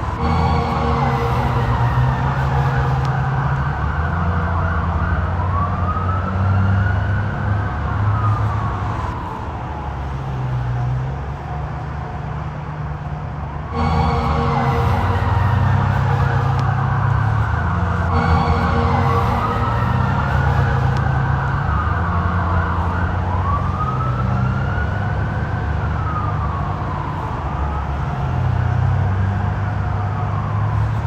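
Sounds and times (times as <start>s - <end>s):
low steady rumble: 0.0s - 4.6s, 13.7s - 22.7s
police siren wailing: 0.0s - 11.4s, 13.6s - 31.0s.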